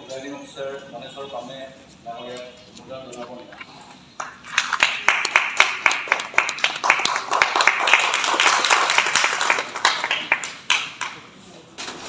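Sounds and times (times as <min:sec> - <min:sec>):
group of people clapping: 0:04.2 - 0:11.4.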